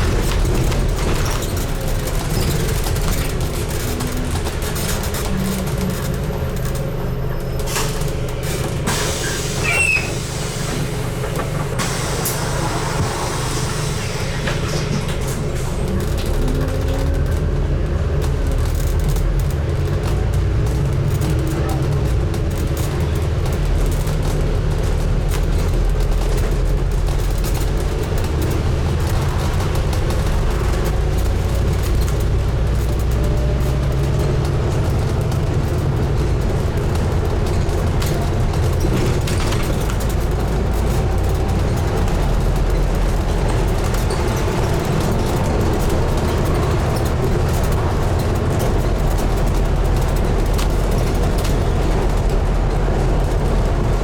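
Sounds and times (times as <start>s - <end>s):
bus engine rumble: 0.0s - 54.0s
road noise: 0.0s - 54.0s.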